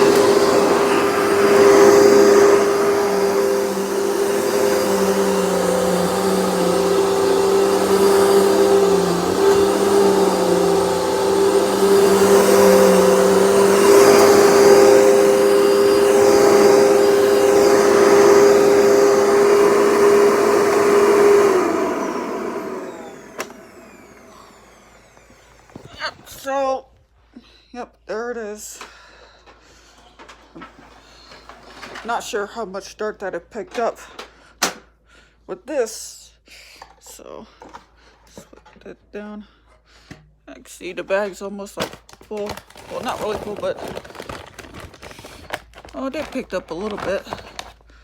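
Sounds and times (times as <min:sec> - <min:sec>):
vacuum cleaner motor whine: 0:00.0 - 0:26.3.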